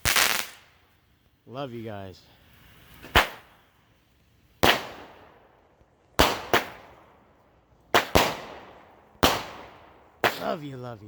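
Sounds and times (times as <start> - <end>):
firework bangs with echo: 0.0 - 0.6, 3.0 - 3.5, 4.6 - 5.4, 6.2 - 7.1, 7.9 - 10.6.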